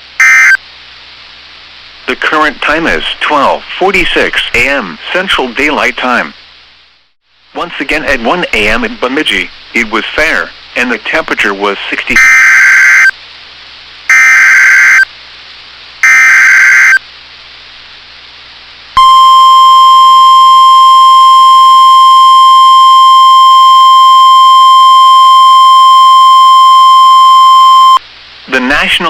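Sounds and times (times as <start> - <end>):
steady warning alarm tone: 0.2 - 0.6, 12.2 - 13.1, 14.1 - 15.1, 16.0 - 17.0, 19.0 - 28.0.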